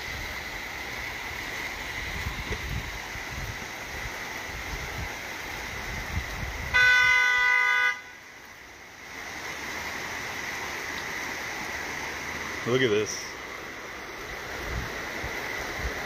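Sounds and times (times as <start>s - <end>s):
vehicle horn honking: 6.7s - 8.2s.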